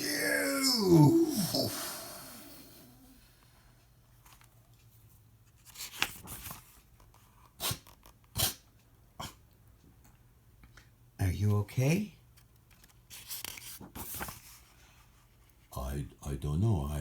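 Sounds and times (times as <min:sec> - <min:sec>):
book pages rustling: 0:04.2 - 0:08.2, 0:12.3 - 0:15.6.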